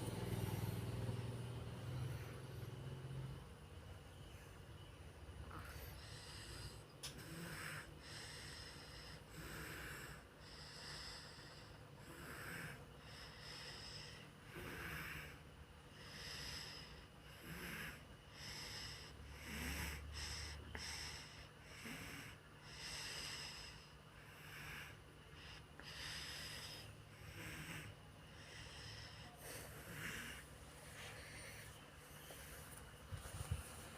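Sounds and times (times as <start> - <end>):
person snoring: 5.5 - 15.4, 16.0 - 32.8.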